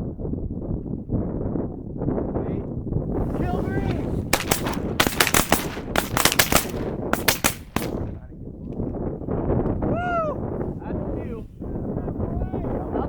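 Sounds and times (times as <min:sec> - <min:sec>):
heavy wind noise: 0:00.0 - 0:13.0
shotgun blasts: 0:03.3 - 0:08.2.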